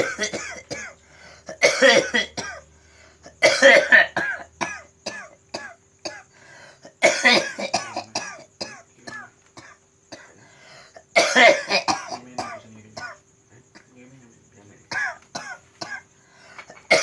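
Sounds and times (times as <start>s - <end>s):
person coughing: 0.0s - 2.6s, 3.3s - 10.3s, 11.0s - 13.2s, 14.9s - 16.0s, 16.8s - 17.0s.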